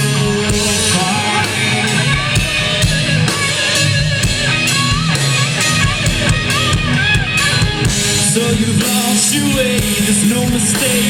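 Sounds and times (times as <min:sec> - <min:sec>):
guitar line bending in pitch: 0:00.0 - 0:09.8
drum kit beat: 0:00.0 - 0:11.0
electric guitars: 0:00.0 - 0:11.0.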